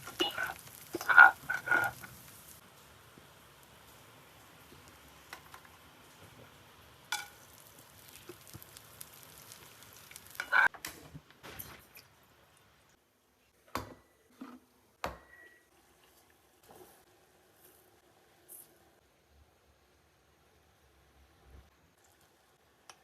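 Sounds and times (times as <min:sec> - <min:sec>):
faint steady hiss: 0:00.0 - 0:23.0
kitchen utensils clinking: 0:07.1 - 0:07.5.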